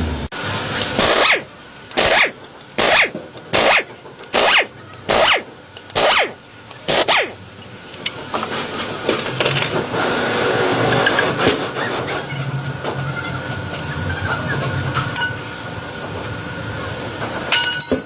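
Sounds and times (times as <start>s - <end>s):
hand tool rasping strokes: 1.0s - 7.4s.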